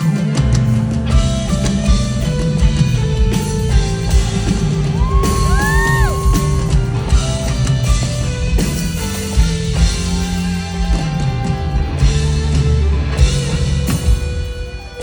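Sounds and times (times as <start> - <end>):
drum kit hits: 0.0 - 14.9.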